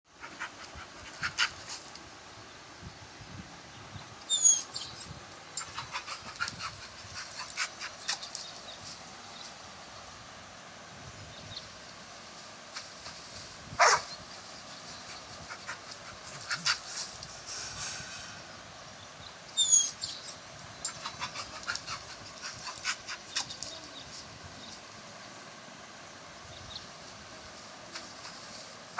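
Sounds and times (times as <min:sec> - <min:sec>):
dog panting: 0:05.6 - 0:08.4, 0:20.9 - 0:23.7.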